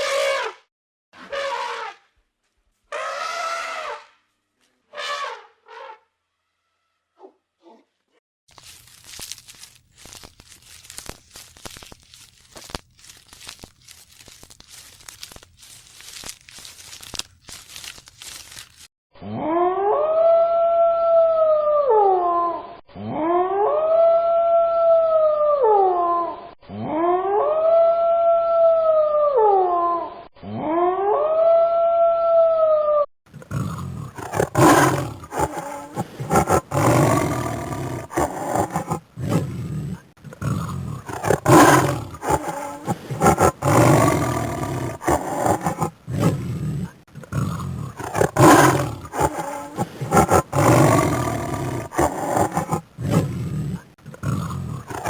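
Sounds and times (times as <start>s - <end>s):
big cat roaring and growling: 33.4s - 55.0s
wolf howling: 33.5s - 39.5s, 40.4s - 46.4s, 47.3s - 55.0s.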